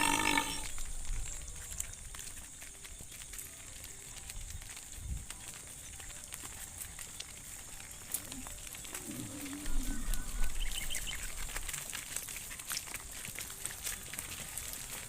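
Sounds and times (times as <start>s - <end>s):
cow mooing: 0.0s - 0.7s
steady high hiss: 0.0s - 0.8s.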